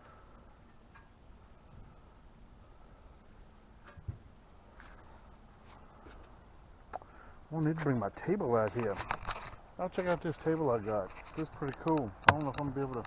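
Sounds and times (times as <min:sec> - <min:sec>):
crickets chirring: 0:00.0 - 0:13.0.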